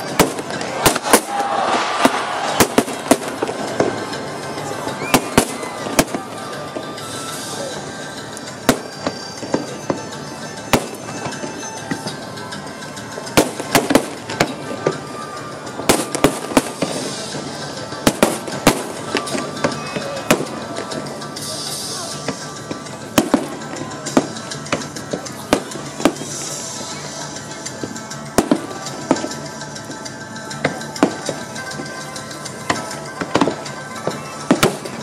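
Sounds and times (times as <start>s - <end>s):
crowd voices: 0.0s - 35.0s
fireworks bangs and cracks: 0.0s - 35.0s
high firework hiss: 0.0s - 35.0s
music: 0.0s - 35.0s.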